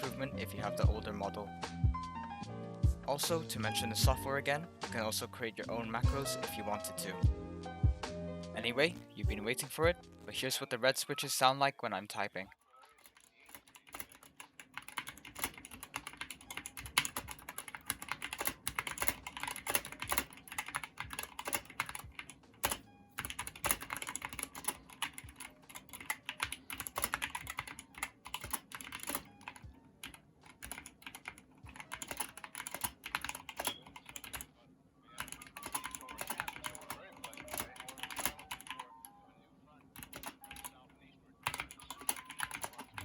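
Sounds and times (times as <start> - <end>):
mechanical keyboard typing: 13.0 - 34.5, 35.2 - 38.9, 39.9 - 40.8, 41.4 - 43.0.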